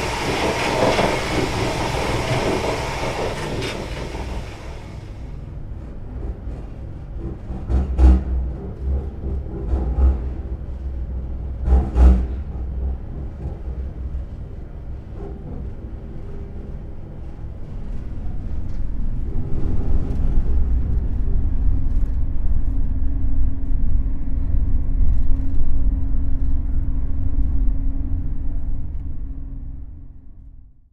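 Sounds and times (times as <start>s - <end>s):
steady hum: 0.0s - 7.8s
train rumbling: 0.0s - 30.4s.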